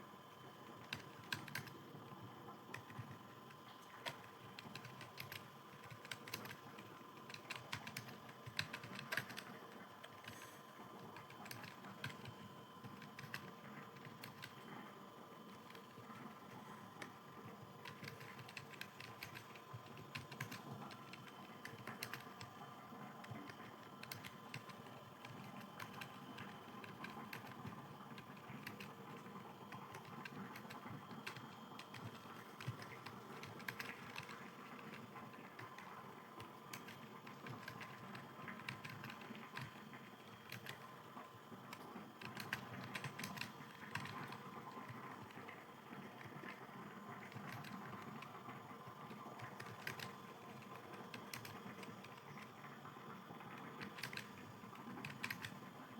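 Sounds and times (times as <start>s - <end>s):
keyboard typing clicks: 0.8s - 1.8s, 3.8s - 10.5s, 11.2s - 14.6s, 17.8s - 22.6s, 23.2s - 40.9s, 41.7s - 45.4s, 47.2s - 48.4s, 49.1s - 52.6s, 53.6s - 55.6s.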